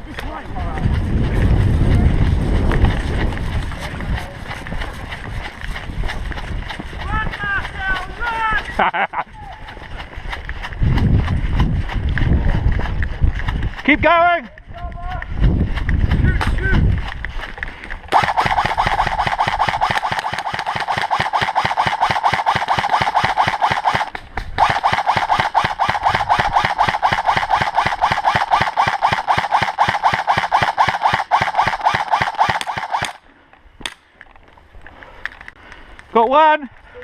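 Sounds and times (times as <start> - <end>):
airsoft rifle firing full auto: 18.1 - 33.2.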